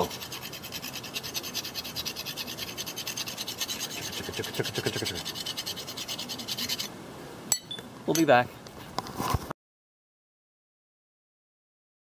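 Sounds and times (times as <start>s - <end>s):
hand tool scraping steel: 0.0s - 6.9s.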